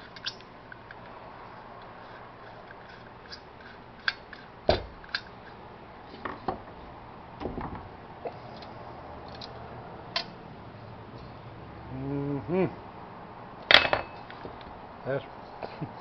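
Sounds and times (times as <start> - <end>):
heavier knock: 7.4 - 8.0.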